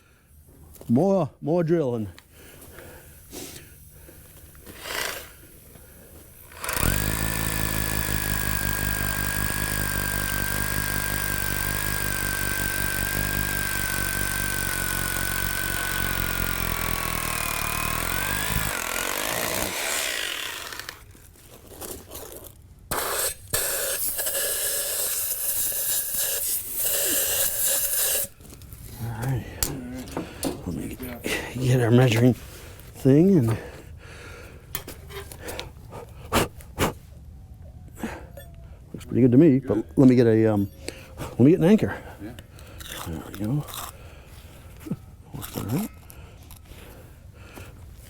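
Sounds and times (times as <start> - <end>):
hammer drill drilling into concrete: 6.4 - 21.0.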